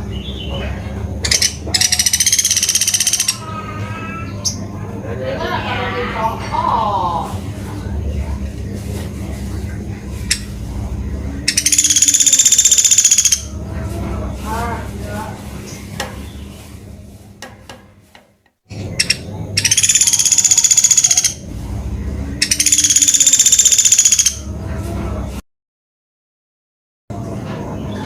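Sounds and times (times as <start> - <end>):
woodpecker rattling trills: 1.2 - 3.4, 11.4 - 13.5, 18.9 - 21.4, 22.4 - 24.4.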